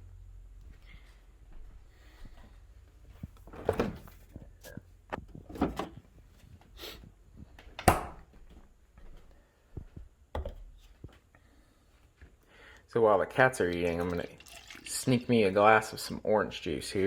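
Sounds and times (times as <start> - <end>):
cupboard doors knocking shut: 7.8 - 8.2.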